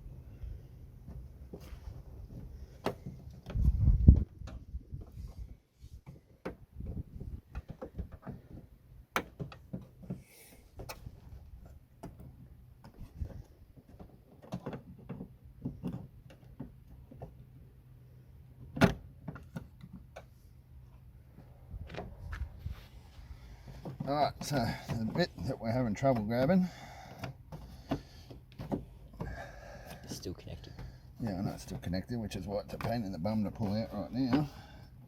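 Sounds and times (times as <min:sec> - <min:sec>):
clicks and knocks inside car door: 0:06.0 - 0:17.4, 0:18.6 - 0:20.2, 0:23.6 - 0:31.0.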